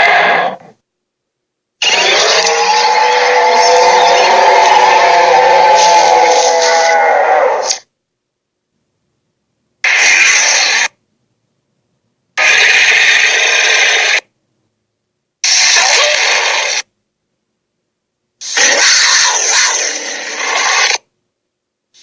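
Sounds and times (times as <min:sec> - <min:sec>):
dinosaur roars: 0:01.8 - 0:07.8, 0:18.4 - 0:21.0.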